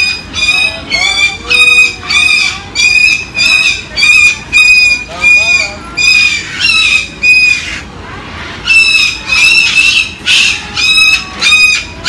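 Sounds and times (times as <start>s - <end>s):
cockatoo screeching: 0.0s - 7.9s, 8.6s - 12.0s.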